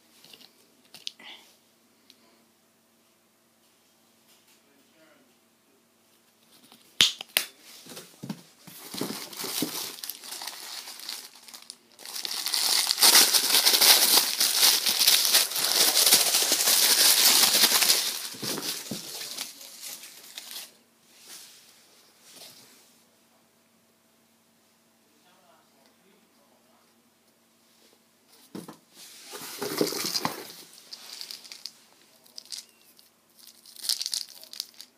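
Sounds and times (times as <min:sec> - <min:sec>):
packaging crinkling: 0:08.7 - 0:20.8, 0:29.3 - 0:34.9.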